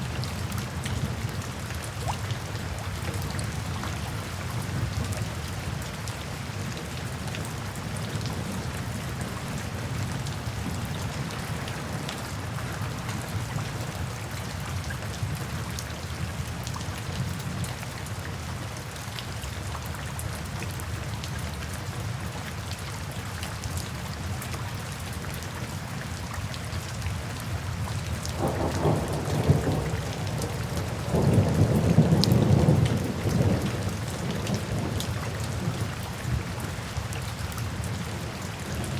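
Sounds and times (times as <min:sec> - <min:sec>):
steady rain falling: 0:00.0 - 0:38.9
thunder rumbling: 0:28.4 - 0:35.8.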